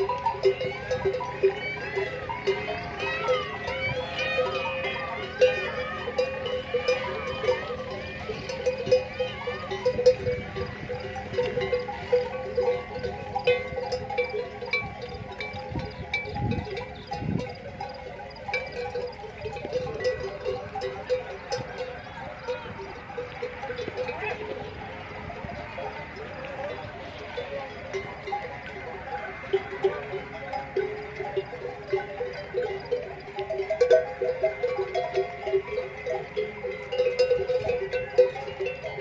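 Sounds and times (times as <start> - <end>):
camel neck bells ringing: 0.0 - 39.0.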